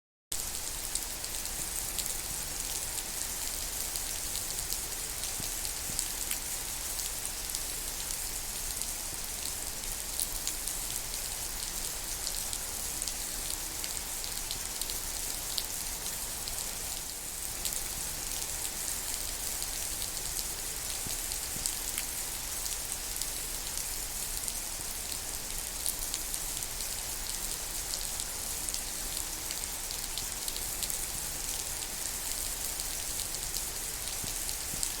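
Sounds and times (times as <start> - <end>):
steady rain falling: 0.4 - 35.0.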